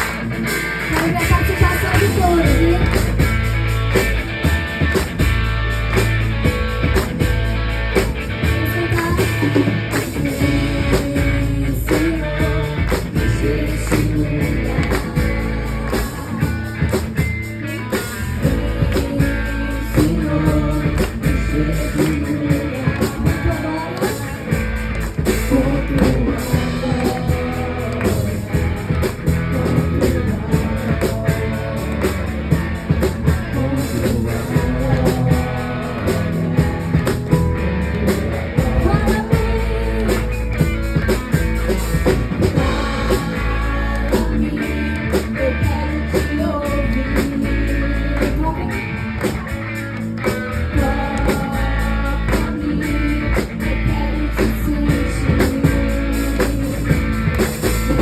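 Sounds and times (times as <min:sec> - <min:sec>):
guitar: 0:00.0 - 0:58.0
rock band music: 0:00.0 - 0:58.0
steady drum beat: 0:00.0 - 0:58.0.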